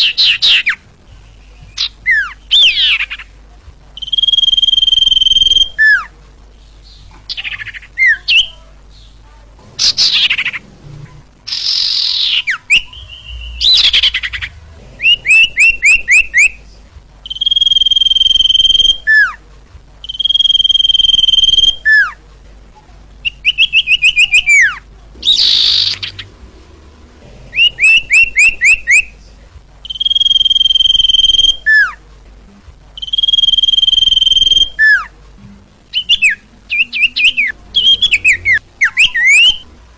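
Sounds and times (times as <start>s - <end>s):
bird song whistles and chirps: 0.0s - 3.3s, 4.0s - 6.1s, 11.5s - 16.6s, 17.2s - 19.4s, 20.0s - 22.2s, 23.2s - 26.3s, 27.5s - 29.1s, 29.8s - 32.0s, 33.0s - 35.1s, 35.9s - 39.7s
harsh rasping bird notes: 9.6s - 16.7s, 23.2s - 29.2s, 35.9s - 39.7s.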